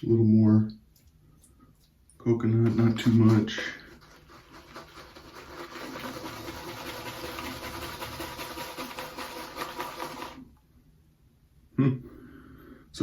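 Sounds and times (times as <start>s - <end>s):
shaving brush swishing lather: 2.6s - 10.5s.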